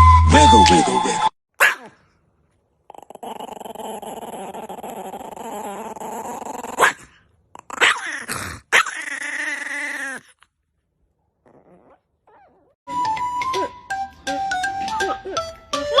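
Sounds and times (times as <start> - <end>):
dog yelping: 1.6 - 2.0, 3.1 - 10.4, 11.4 - 12.8
dog growling: 2.8 - 10.5, 11.4 - 12.8
dog whining: 2.9 - 10.5, 11.4 - 12.8.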